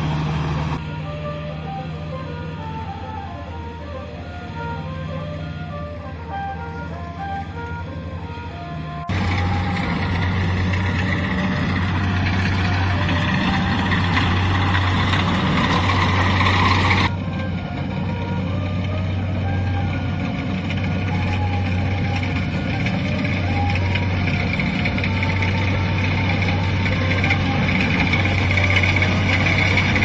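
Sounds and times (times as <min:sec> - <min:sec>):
engine drone: 0:00.0 - 0:30.0
harvester machinery rushing: 0:09.1 - 0:30.0.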